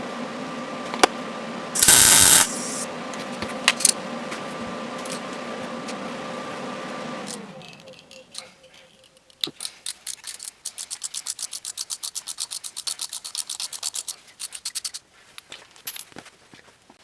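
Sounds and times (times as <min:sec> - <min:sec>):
ratchet wrench clicking fast: 0:01.8 - 0:02.8, 0:09.1 - 0:15.0.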